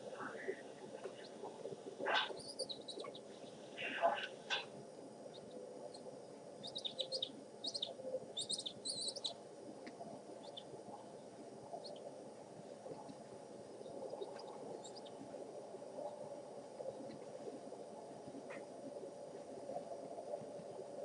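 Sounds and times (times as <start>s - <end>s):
steady background hiss: 0.0s - 21.0s
birds chirping: 1.1s - 4.7s, 5.3s - 9.4s, 10.4s - 12.0s, 13.8s - 15.2s.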